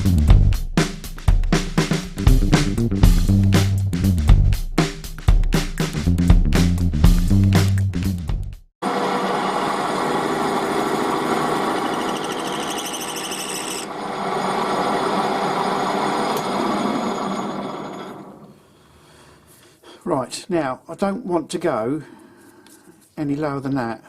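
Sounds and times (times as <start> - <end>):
power tool running: 8.8 - 18.5.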